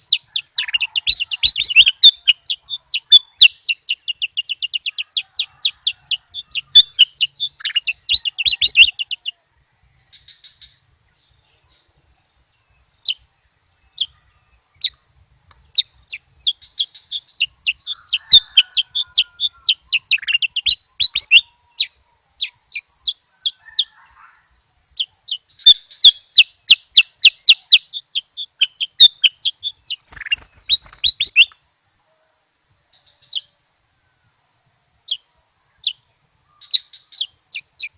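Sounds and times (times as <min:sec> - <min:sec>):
bird chirping rapidly: 0:00.0 - 0:09.3, 0:15.6 - 0:24.3, 0:25.0 - 0:31.6, 0:36.6 - 0:37.9
steady high hiss: 0:00.0 - 0:37.9.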